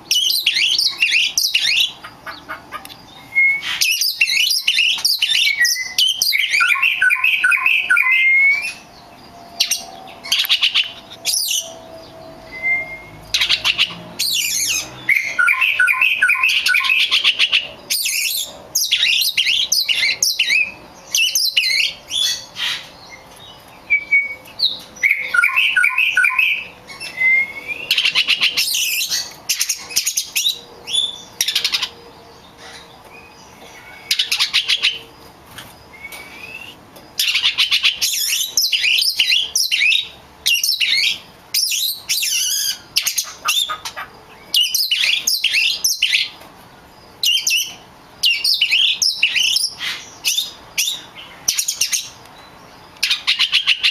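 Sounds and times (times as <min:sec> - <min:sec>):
birds chirping: 0:00.0 - 0:53.9
short rising whistles: 0:03.3 - 0:03.9, 0:11.3 - 0:13.6, 0:27.1 - 0:27.9, 0:35.9 - 0:36.8.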